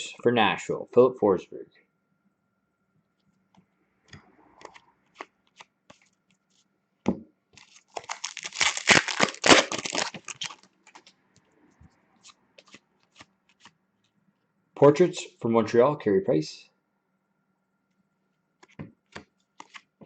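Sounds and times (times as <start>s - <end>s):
foil wrapper tearing and crinkling: 7.6s - 11.1s.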